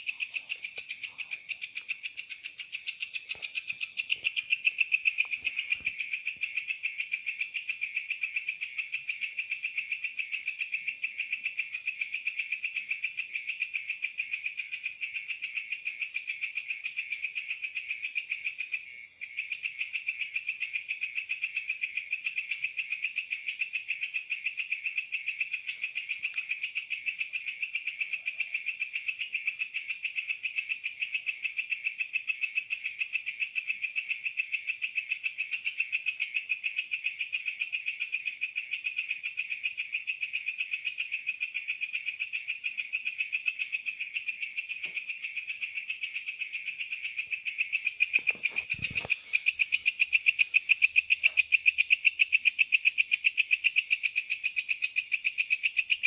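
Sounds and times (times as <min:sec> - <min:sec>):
crickets chirring: 0:00.0 - 0:56.0.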